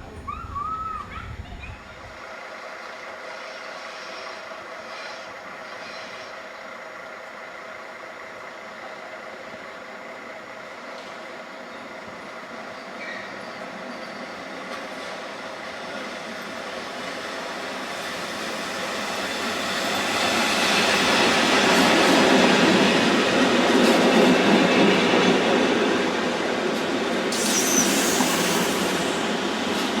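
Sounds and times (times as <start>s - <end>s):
train running: 0.0s - 30.0s.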